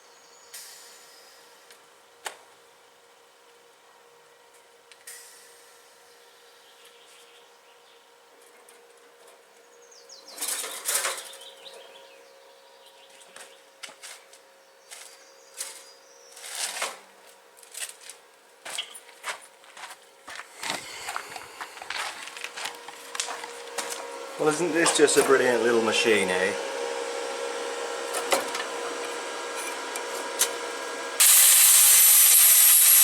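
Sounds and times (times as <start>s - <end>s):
faint steady hum: 20.2s - 30.1s.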